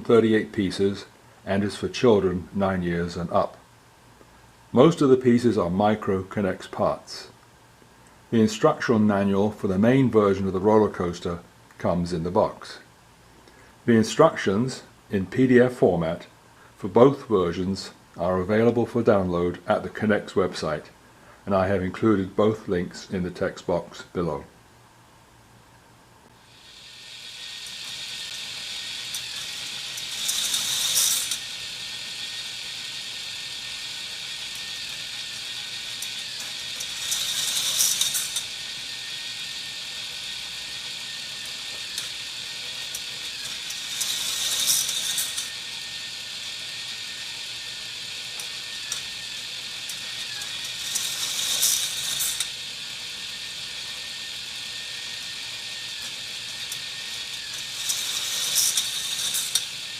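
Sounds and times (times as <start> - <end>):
chain lift whirring clatter: 26.5 - 59.9
plastic cars rattling down track: 29.0 - 31.6, 34.1 - 39.0, 39.6 - 45.8, 47.3 - 52.6, 55.2 - 59.9.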